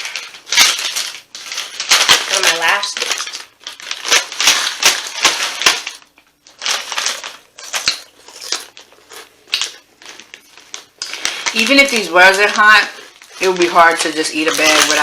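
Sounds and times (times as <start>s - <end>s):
chips being chewed crunching: 0.0s - 15.0s.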